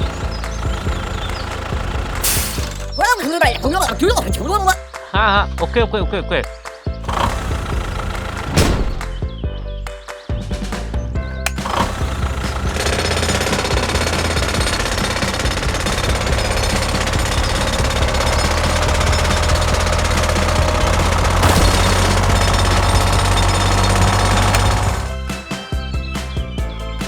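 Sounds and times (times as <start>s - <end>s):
rapid mechanical hammering: 0.0s - 3.0s, 7.0s - 9.2s, 11.5s - 25.2s.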